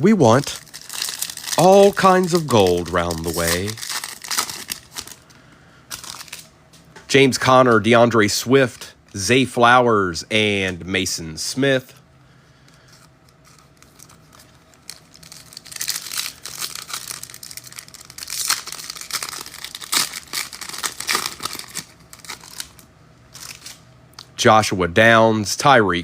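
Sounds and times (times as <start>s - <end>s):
wrapper tearing and crinkling: 0.3s - 5.2s, 5.9s - 6.5s, 13.3s - 23.8s
cards rustling: 0.3s - 5.3s, 5.9s - 6.4s, 12.7s - 23.8s.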